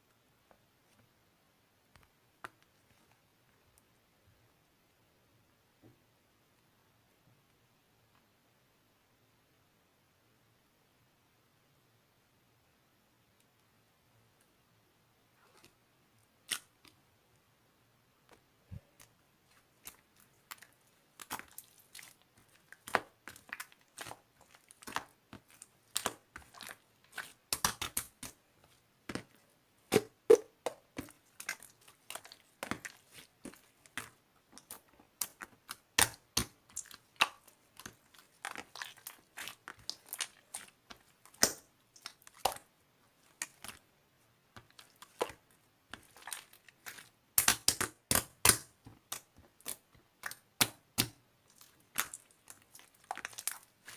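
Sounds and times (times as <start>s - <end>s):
slime clicking and popping: 22.8s - 28.4s, 29.9s - 42.6s, 46.0s - 53.9s.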